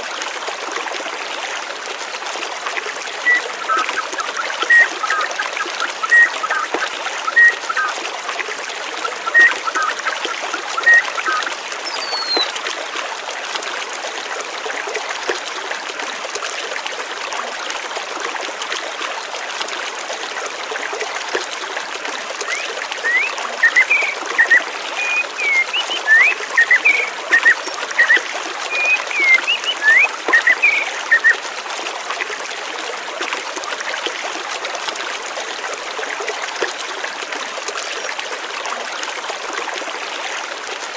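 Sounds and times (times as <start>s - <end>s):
water trickling: 0.0s - 39.0s
birds chirping: 3.3s - 7.9s, 9.1s - 12.5s, 22.5s - 31.4s.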